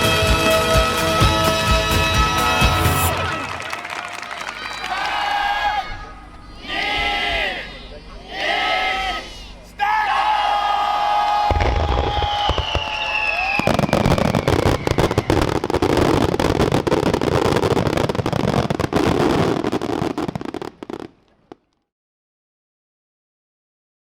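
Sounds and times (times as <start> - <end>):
fireworks spraying sparks: 11.5 - 21.1.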